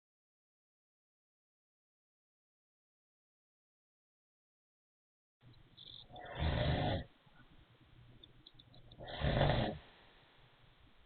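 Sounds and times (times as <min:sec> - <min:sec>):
wheezy snoring: 0:06.0 - 0:07.1, 0:08.9 - 0:10.0.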